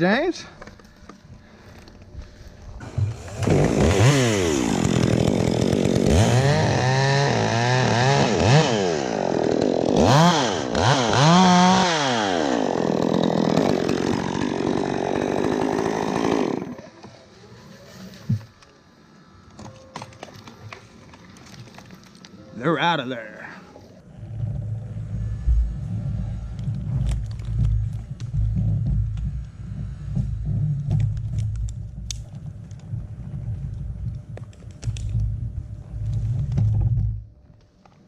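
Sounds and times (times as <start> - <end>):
chainsaw cutting wood: 2.8 - 17.2.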